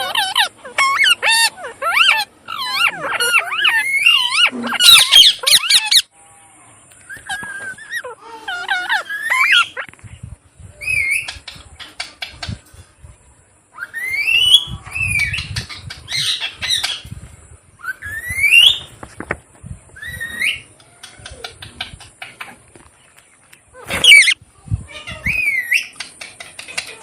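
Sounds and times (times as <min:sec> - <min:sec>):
parrot screeching: 0:00.0 - 0:06.1, 0:07.1 - 0:09.9, 0:23.8 - 0:24.4
parrot clicking chatter: 0:23.9 - 0:24.4, 0:25.8 - 0:27.0.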